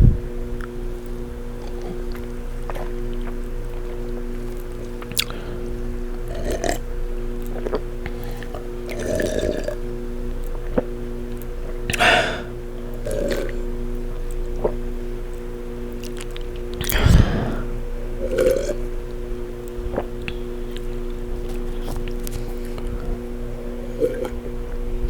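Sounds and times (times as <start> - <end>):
low hum: 0.0 - 5.0, 5.6 - 25.0
wet gulping: 0.6 - 15.1, 15.8 - 25.0
person burping: 11.9 - 13.6, 16.8 - 18.8.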